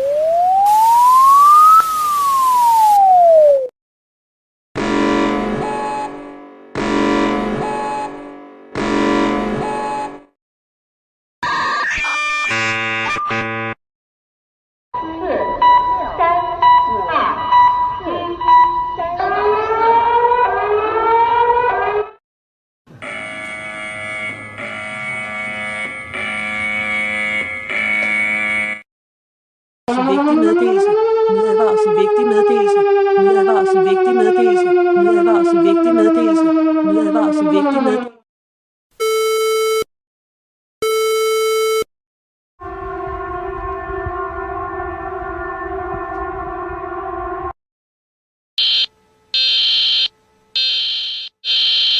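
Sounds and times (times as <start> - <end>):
buzzy electronic alert tone: 0.0 - 3.0, 23.0 - 28.8
rising siren-like tone: 0.0 - 3.7, 42.6 - 47.5
steady multi-tone siren: 0.0 - 3.7, 11.5 - 13.8, 22.9 - 28.8, 29.9 - 38.2, 42.6 - 47.6, 48.6 - 51.9
steady buzzing alarm tone: 12.5 - 13.8, 22.9 - 28.8, 48.6 - 51.9.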